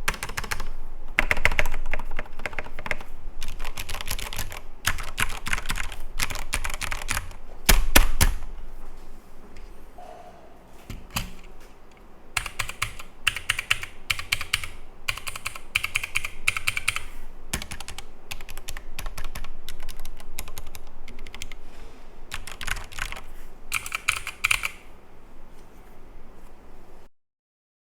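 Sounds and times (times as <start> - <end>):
mechanical keyboard typing: 0.0 - 8.4, 10.9 - 11.5, 12.4 - 21.6, 22.3 - 24.9.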